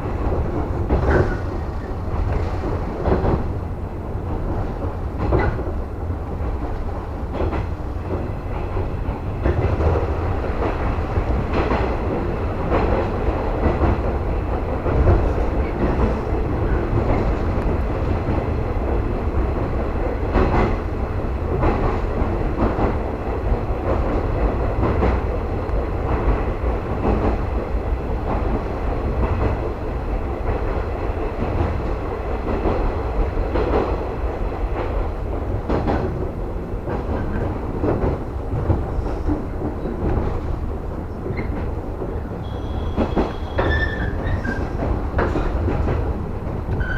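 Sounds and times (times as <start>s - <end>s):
train wheels rumbling on rail: 0.0s - 46.9s
wheels clicking over rail joints: 34.7s - 46.9s.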